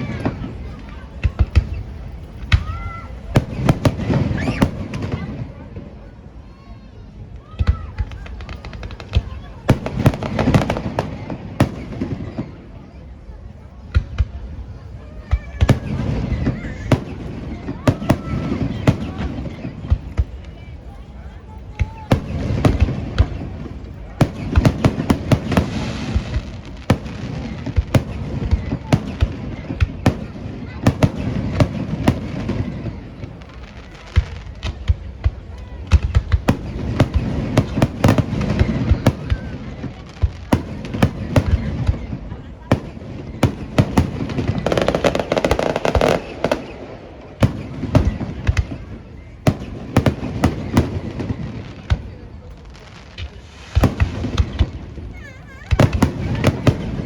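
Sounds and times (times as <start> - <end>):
fireworks bangs: 0.0 - 57.0
fireworks crackling: 0.0 - 57.0.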